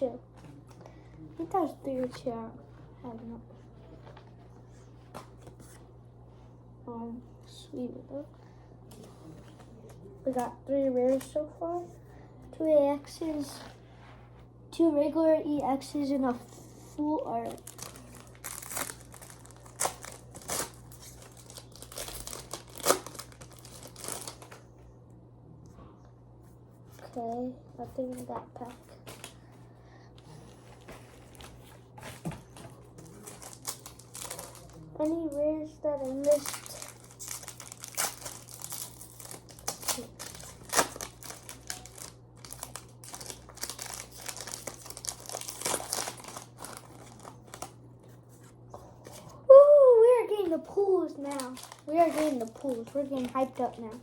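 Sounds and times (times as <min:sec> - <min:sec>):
foil wrapper crinkling: 0:17.3 - 0:24.6, 0:33.0 - 0:47.8, 0:51.0 - 0:54.0.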